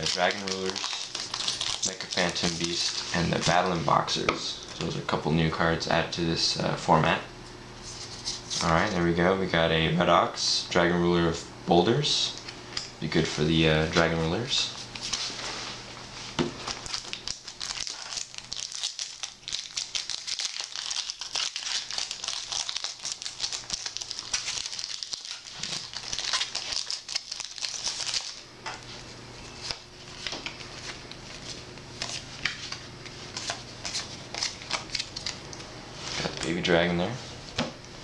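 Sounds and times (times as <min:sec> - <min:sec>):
foil wrapper crinkling and tearing: 0:00.0 - 0:03.6, 0:16.6 - 0:28.4, 0:29.5 - 0:35.4
cards being handled: 0:00.0 - 0:05.0, 0:16.4 - 0:36.7.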